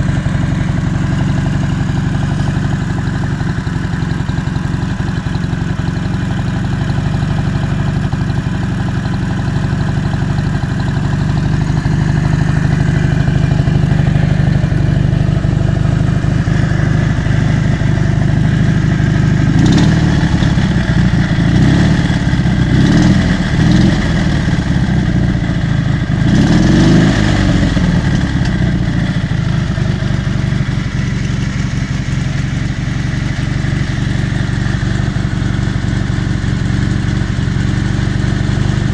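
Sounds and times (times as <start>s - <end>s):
engine throttle blips: 0.0s - 38.9s
motorcycle engine idling: 0.0s - 38.9s.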